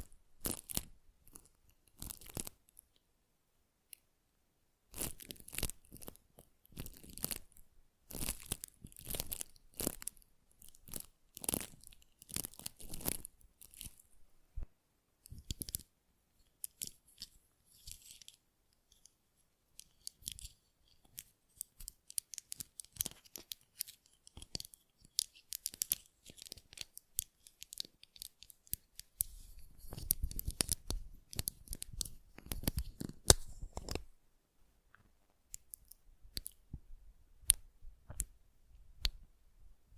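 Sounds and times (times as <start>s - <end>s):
crisp crackling and scratching: 0.0s - 2.8s, 5.0s - 14.1s, 15.3s - 15.9s, 16.5s - 19.2s, 19.8s - 34.1s.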